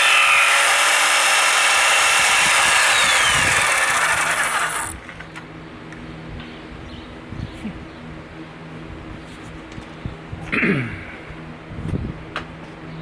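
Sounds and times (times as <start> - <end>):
power tool cutting wood: 0.0 - 5.0.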